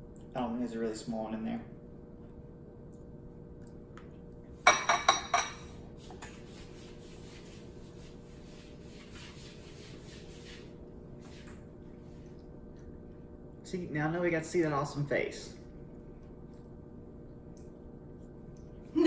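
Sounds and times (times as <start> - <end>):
cutlery clinking against a bowl: 4.7 - 5.8
soft rubbing and scraping: 5.8 - 12.3.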